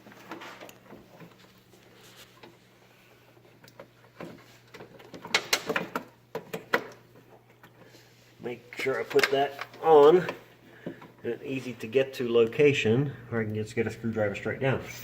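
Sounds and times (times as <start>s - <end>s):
light clicks and knocks of parts: 0.0s - 2.6s, 3.3s - 8.1s, 8.8s - 11.2s.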